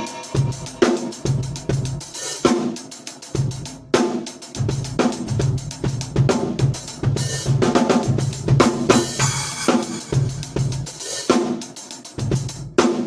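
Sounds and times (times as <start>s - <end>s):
cymbal crash: 0.0s - 2.8s, 9.0s - 11.2s
drum kit playing fast: 0.0s - 13.0s.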